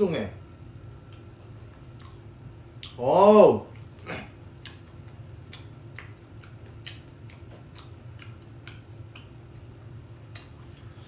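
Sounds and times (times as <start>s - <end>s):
faint low hum: 0.0s - 11.0s
crunchy chewing: 3.7s - 9.4s.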